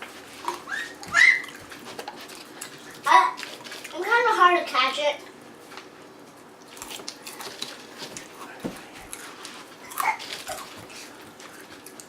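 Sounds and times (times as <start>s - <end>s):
crunchy snacks being eaten: 0.3s - 4.0s, 6.6s - 12.0s.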